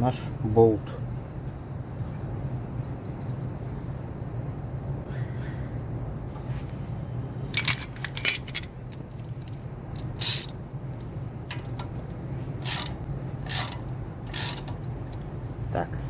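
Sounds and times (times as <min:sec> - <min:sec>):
steady low hum: 0:00.0 - 0:16.0
metal wrench clinking and scraping: 0:07.5 - 0:08.8, 0:09.4 - 0:10.5, 0:12.6 - 0:14.7.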